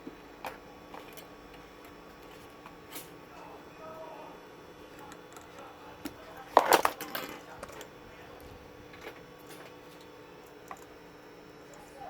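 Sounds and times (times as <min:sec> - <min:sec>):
small tools clattering: 0:05.3 - 0:07.9.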